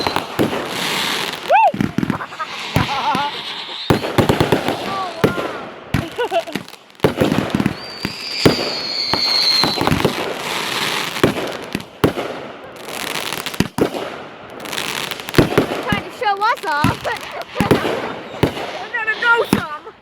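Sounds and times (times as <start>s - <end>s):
high firework whistle: 0.0s - 11.2s, 15.8s - 19.9s
firework bangs and crackles: 0.0s - 20.0s.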